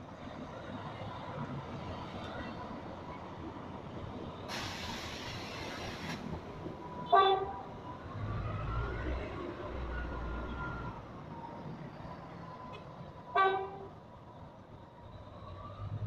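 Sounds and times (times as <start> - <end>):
hiss: 4.5 - 6.3
train horn toot: 7.1 - 7.5, 13.4 - 13.9.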